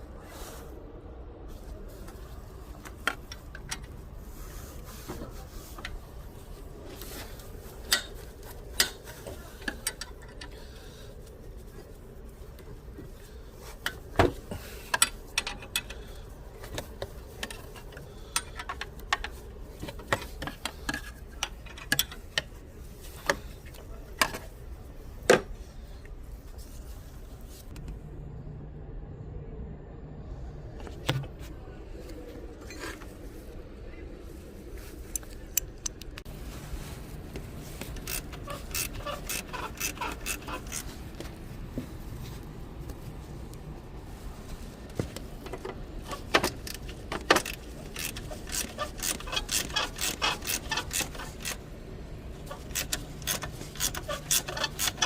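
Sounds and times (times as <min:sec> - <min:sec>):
steady low hum: 0:00.0 - 0:55.0
sharp metallic clicks and knocks: 0:45.4 - 0:51.6.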